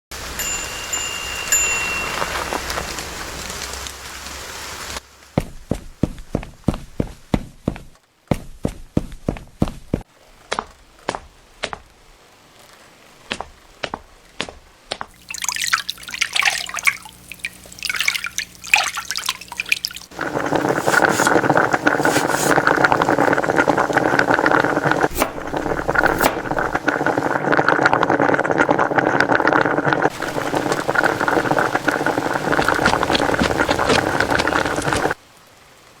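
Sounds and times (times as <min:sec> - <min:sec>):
loud rush of running water: 0:00.1 - 0:05.2, 0:15.1 - 0:36.0
water splashing and trickling: 0:00.1 - 0:05.5, 0:15.1 - 0:35.8.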